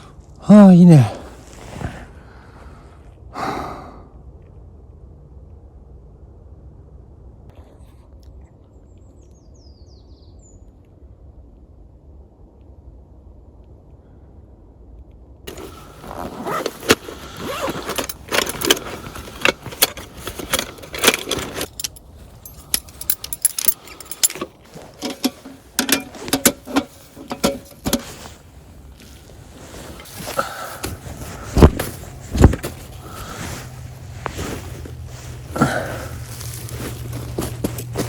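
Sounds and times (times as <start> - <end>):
metal gear clinking and rattling: 15.5 - 28.3, 31.2 - 38.0
heavy thumps: 29.9 - 38.0.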